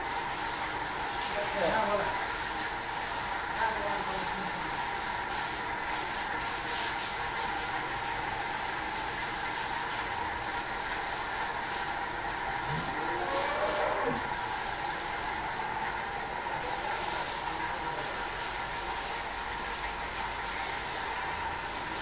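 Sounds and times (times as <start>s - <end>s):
background hiss and hum: 0.0s - 1.4s, 7.1s - 22.0s
cow mooing: 12.7s - 14.3s.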